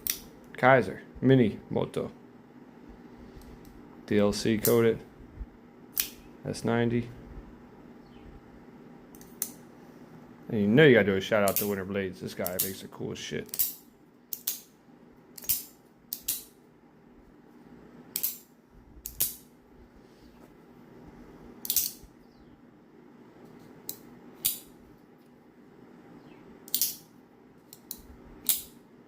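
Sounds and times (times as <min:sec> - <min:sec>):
pocket knife metallic clicks: 0:21.6 - 0:22.0, 0:26.7 - 0:27.0.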